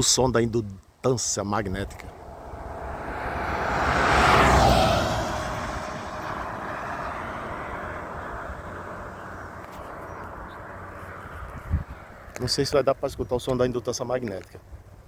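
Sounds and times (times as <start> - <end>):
quiet steady hiss: 0.0 - 3.9
road vehicle passing: 1.8 - 12.7.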